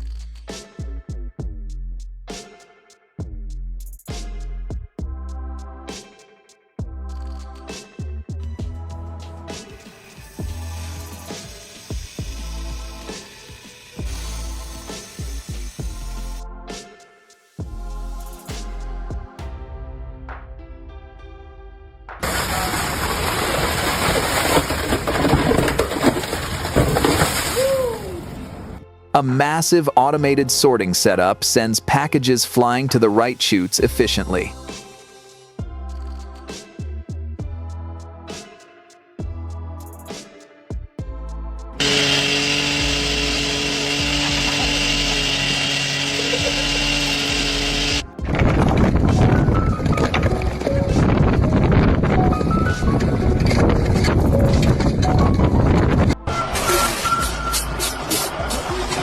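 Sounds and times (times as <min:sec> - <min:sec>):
machine hissing and whining: 0:09.6 - 0:16.4, 0:41.8 - 0:48.0
industrial machinery rattling: 0:41.8 - 0:49.4.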